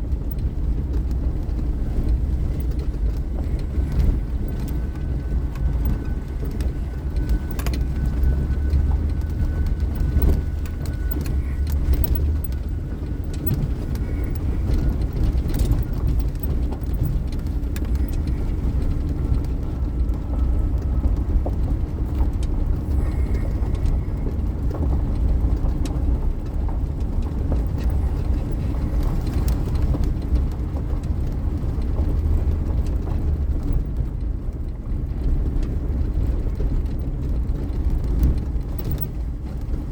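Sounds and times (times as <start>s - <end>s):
car rumbling in motion: 0.0s - 39.9s
faint ticks: 2.6s - 25.8s, 37.3s - 39.8s.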